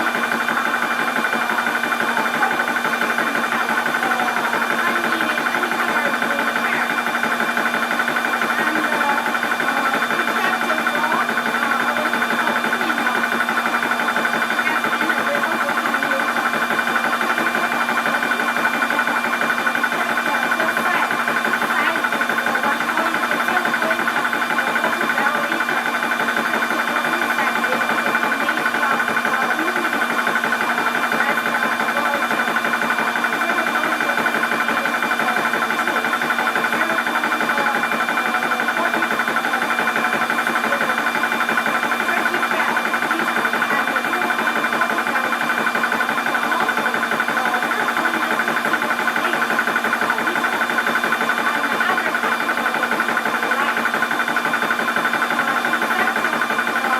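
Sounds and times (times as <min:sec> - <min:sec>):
air compressor running: 0:00.0 - 0:56.9.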